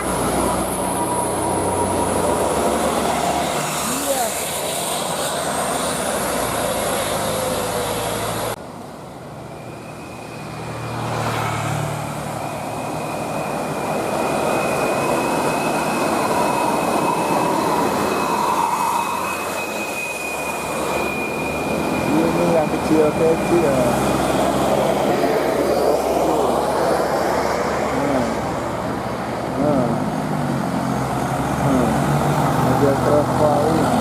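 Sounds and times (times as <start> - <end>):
buses passing: 0.0 - 34.0
steady high whine: 11.8 - 34.0.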